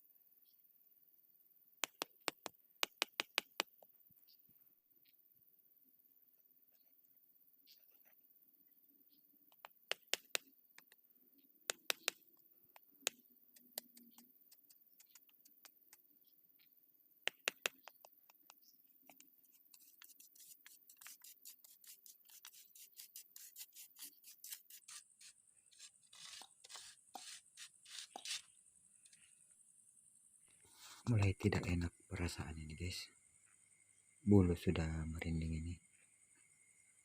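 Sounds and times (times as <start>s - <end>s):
paving blocks clicking together: 1.8s - 3.8s, 9.6s - 11.0s, 11.7s - 16.0s, 17.3s - 21.7s.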